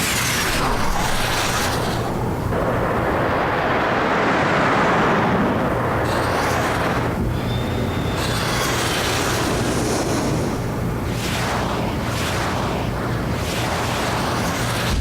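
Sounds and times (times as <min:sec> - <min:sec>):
loud rushing rumble: 0:00.0 - 0:07.4, 0:09.0 - 0:12.4, 0:14.8 - 0:15.0.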